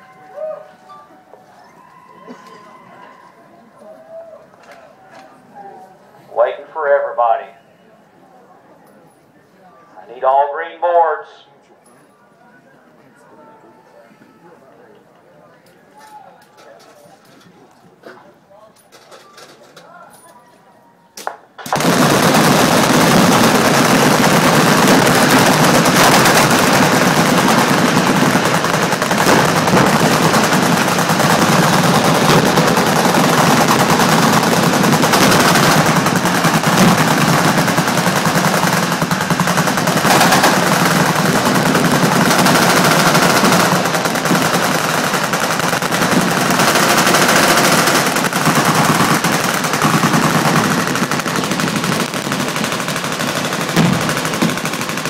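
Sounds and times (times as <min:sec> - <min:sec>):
machine guns firing: 0:21.6 - 0:55.0.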